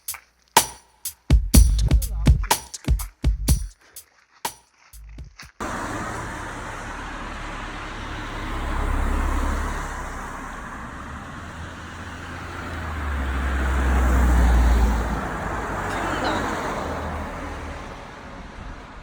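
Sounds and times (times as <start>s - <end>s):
vehicle passing with low rumble: 5.0s - 19.0s.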